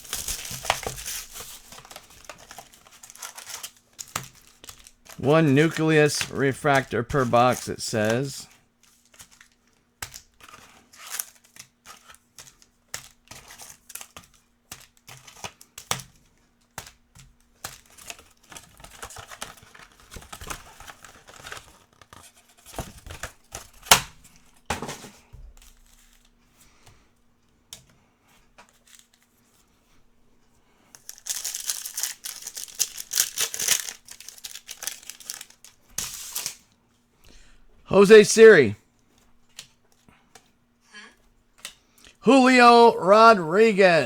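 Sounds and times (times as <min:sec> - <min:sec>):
card wrappers tearing and crinkling: 0:00.0 - 0:07.6, 0:10.4 - 0:14.1, 0:31.0 - 0:36.6
cards handled: 0:31.0 - 0:35.8.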